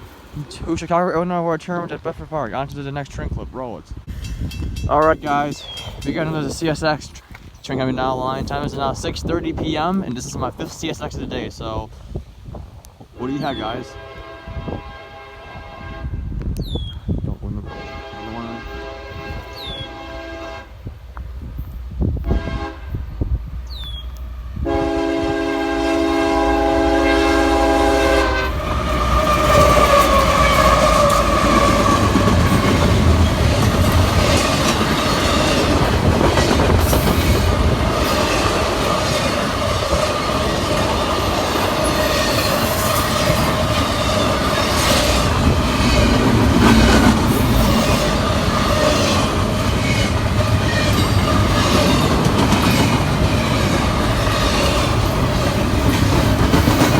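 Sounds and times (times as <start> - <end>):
locomotive horn blasts: 13.2 - 16.3, 17.6 - 20.8, 22.2 - 23.1, 24.6 - 33.4
train wheels clacking over rails: 26.0 - 56.9.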